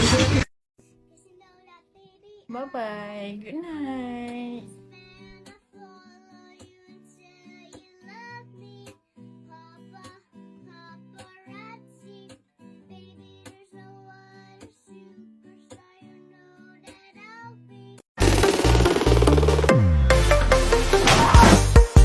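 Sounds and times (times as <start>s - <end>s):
loud music track: 18.2s - 22.0s.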